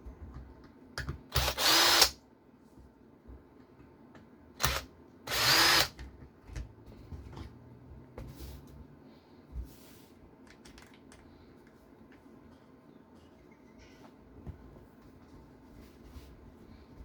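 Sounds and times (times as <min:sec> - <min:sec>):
electric screwdriver spinning: 0:01.3 - 0:02.1, 0:04.6 - 0:06.0.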